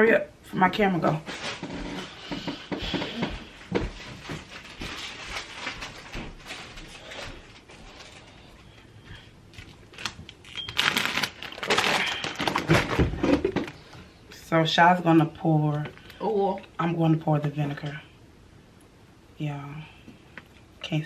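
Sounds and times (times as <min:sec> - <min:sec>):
rustling: 0:01.2 - 0:13.9.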